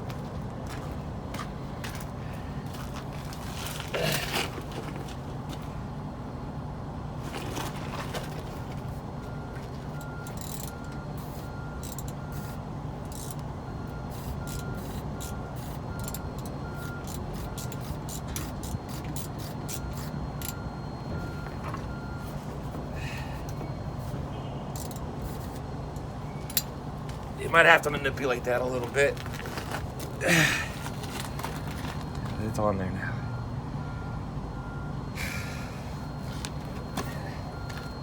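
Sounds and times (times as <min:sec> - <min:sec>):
steady low hum: 0:00.0 - 0:38.0
ratchet clicking: 0:10.2 - 0:13.4, 0:14.2 - 0:20.6, 0:24.8 - 0:25.5.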